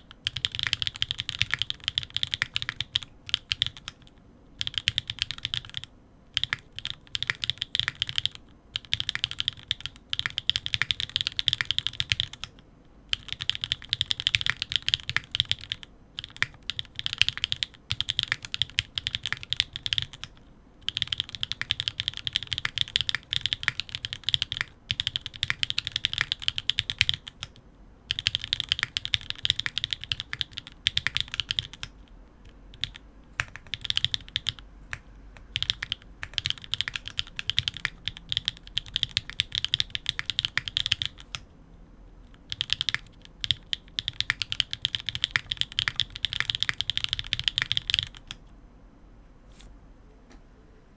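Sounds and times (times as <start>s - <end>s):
mechanical keyboard typing: 0.0s - 41.4s, 42.3s - 48.4s.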